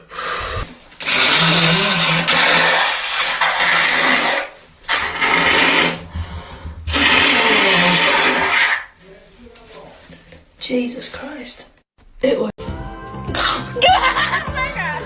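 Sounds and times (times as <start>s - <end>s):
person blowing nose: 0.0s - 6.1s, 6.9s - 8.9s, 13.3s - 13.8s.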